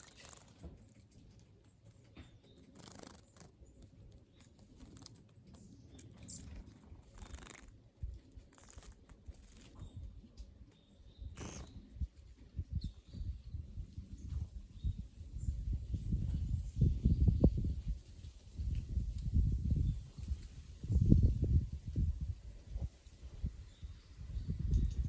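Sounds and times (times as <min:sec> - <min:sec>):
birds fluttering and splashing: 0:00.0 - 0:12.6
high bird chirp: 0:08.5 - 0:15.6.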